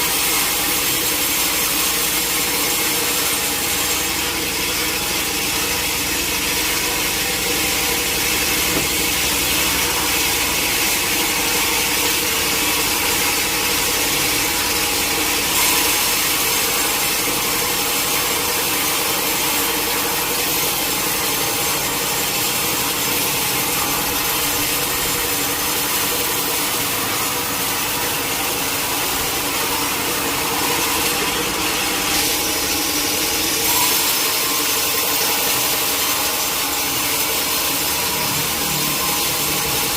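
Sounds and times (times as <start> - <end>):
saw blade rasping through log: 0.0 - 39.9
sawmill machine hum: 0.0 - 39.9.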